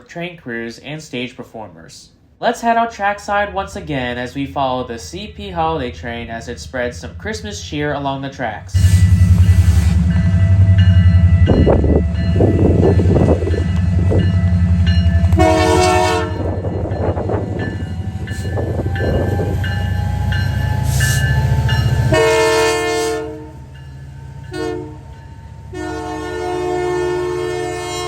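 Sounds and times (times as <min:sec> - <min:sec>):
passing train rumble: 0:03.0 - 0:28.0
locomotive air horn blasts: 0:08.7 - 0:17.4, 0:22.0 - 0:23.7, 0:24.4 - 0:25.1, 0:25.7 - 0:28.0.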